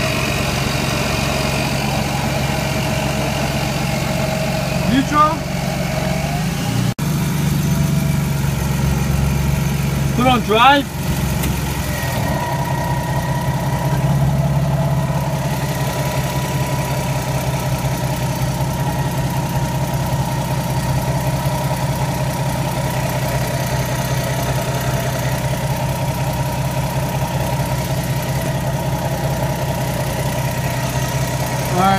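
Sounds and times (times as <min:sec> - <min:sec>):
car engine idling: 0:00.0 - 0:31.9
steady rattle: 0:07.2 - 0:31.9.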